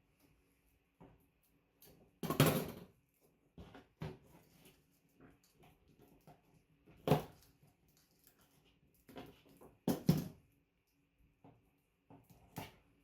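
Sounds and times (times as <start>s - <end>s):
small clicks and rustles: 3.0s - 9.9s.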